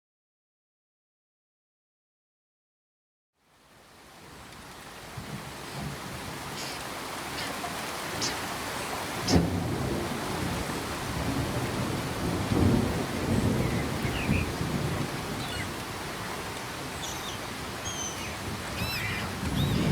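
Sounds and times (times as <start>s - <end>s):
steady rain falling: 3.4s - 19.9s
high chirps: 17.0s - 19.9s.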